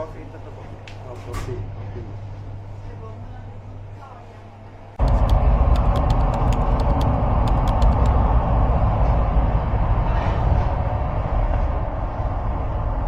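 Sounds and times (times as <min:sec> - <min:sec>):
light clicks and rattles: 0:05.0 - 0:08.2
train rumbling: 0:05.0 - 0:13.0.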